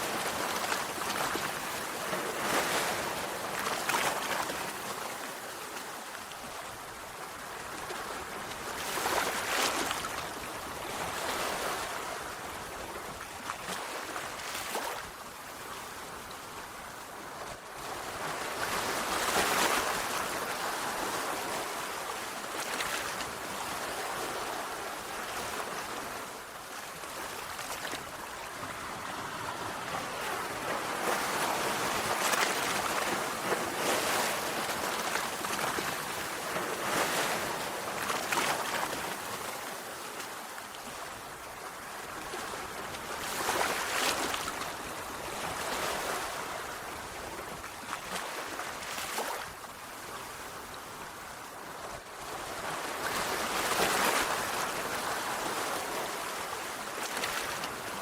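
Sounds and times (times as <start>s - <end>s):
sea waves breaking on shore: 0.0s - 58.0s.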